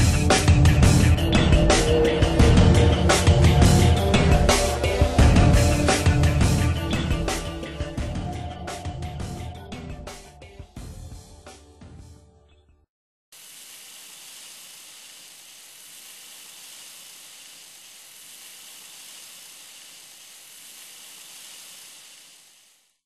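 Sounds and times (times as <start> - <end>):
steady hiss: 0.0 - 8.0, 13.3 - 23.0.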